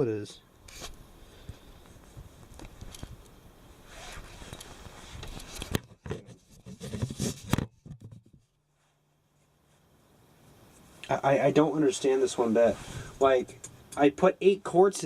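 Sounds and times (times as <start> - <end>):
handling scraping and rubbing: 3.8 - 9.9.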